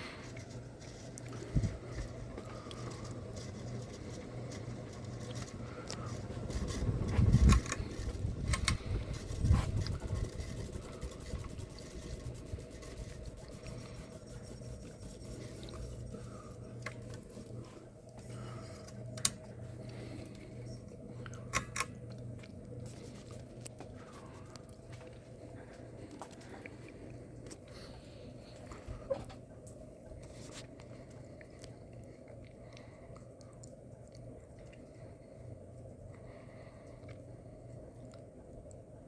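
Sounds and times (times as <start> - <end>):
ceiling fan motor hum: 0.0 - 39.0.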